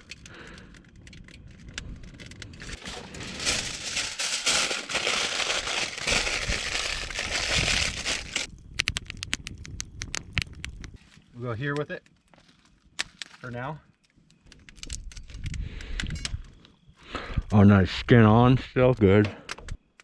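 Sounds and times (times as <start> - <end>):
sharp snaps of burning wood: 0.0 - 2.6, 8.5 - 11.0, 11.7 - 16.4
wood fire crackling: 0.0 - 17.6.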